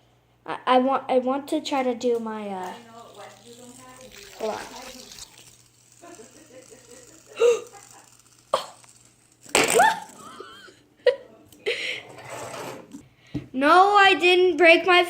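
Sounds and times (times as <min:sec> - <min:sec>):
girl laughing and gasping: 0:07.2 - 0:07.9.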